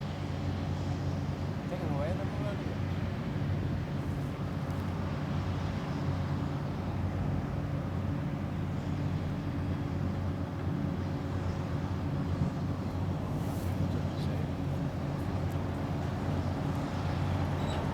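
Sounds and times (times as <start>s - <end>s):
combine harvester engine running: 10.7s - 17.9s.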